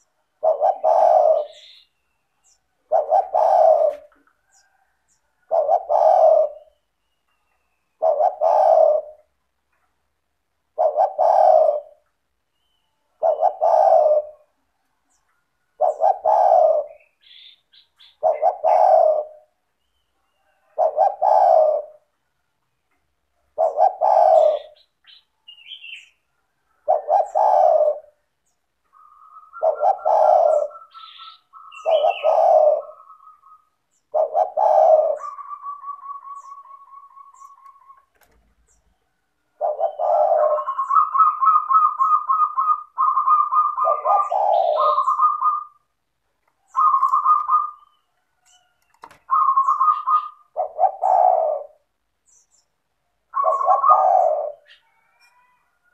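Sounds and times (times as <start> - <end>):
doves cooing: 0.0 - 7.0, 7.9 - 9.4, 10.7 - 12.2, 13.2 - 14.6, 15.7 - 19.7, 20.4 - 22.1, 23.4 - 25.0, 25.8 - 52.5, 53.2 - 55.9.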